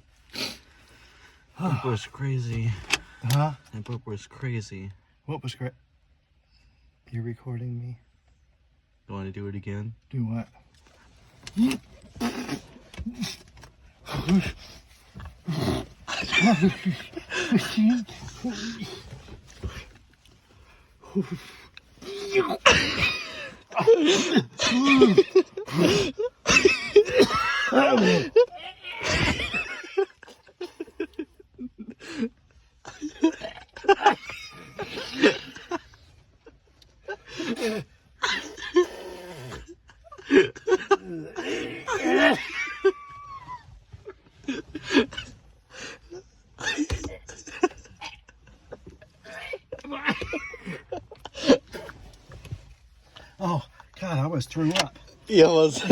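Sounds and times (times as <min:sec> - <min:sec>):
man retching: 0:11.4 - 0:20.0, 0:21.0 - 0:28.4, 0:37.4 - 0:39.7, 0:46.6 - 0:48.1
man sneezing and gagging: 0:11.4 - 0:20.0, 0:21.0 - 0:29.8, 0:37.2 - 0:42.7, 0:44.6 - 0:48.4, 0:49.2 - 0:52.2.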